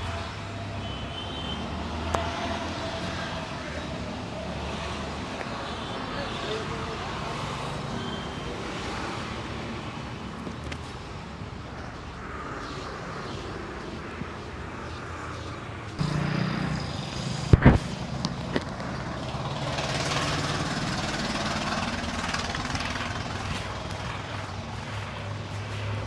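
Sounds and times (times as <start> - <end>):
roadside traffic: 0.0 - 26.0
vehicle engine humming: 14.1 - 26.0.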